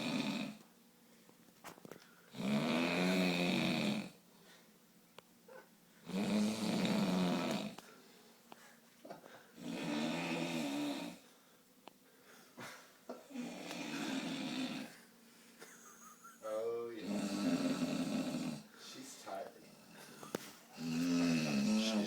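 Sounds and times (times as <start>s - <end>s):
man snoring: 0.0s - 0.6s, 2.3s - 4.2s, 6.0s - 7.8s, 9.6s - 11.2s, 13.3s - 15.0s, 17.0s - 18.7s, 20.7s - 22.0s.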